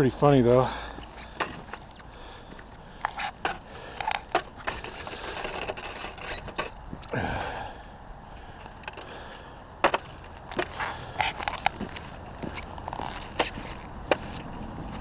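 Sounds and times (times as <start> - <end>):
footsteps crunching in snow: 10.0 - 15.0.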